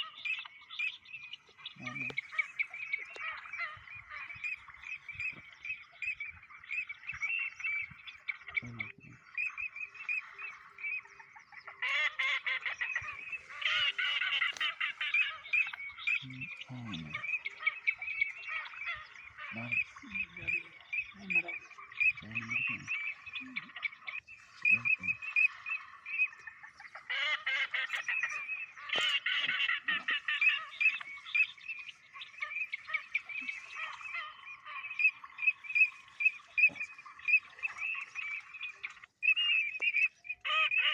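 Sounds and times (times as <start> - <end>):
chorus of animal calls: 0.0 - 40.9.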